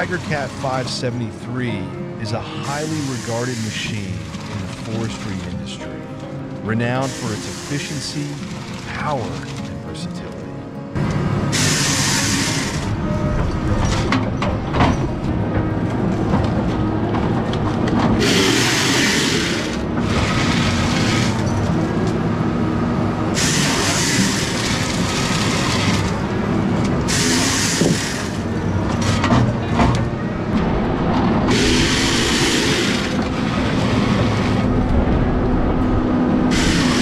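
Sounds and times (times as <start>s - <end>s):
forestry machine engine rumble: 0.0s - 37.0s
loud rushing noise: 11.0s - 14.4s, 15.1s - 37.0s.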